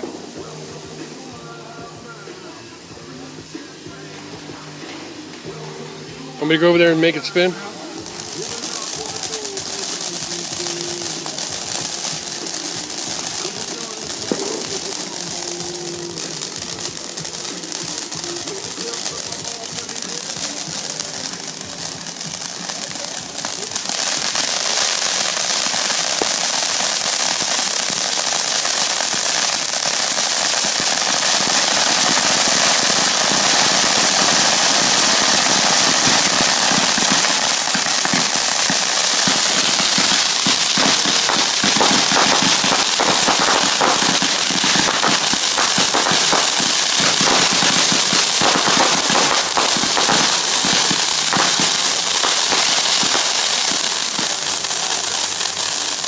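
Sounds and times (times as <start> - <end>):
fireworks crackling: 0.0 - 56.0.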